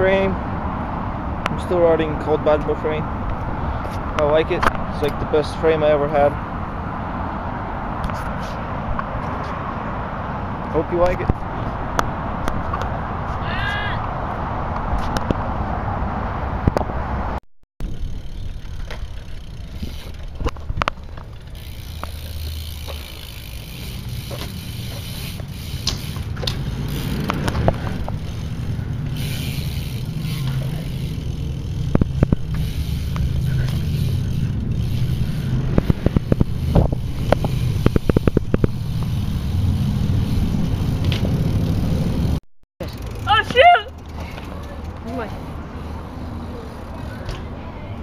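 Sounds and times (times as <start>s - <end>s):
bike clicks and knocks: 2.5s - 5.2s, 17.8s - 45.3s, 46.8s - 47.5s
bike tyres rumbling on ground: 5.7s - 48.0s.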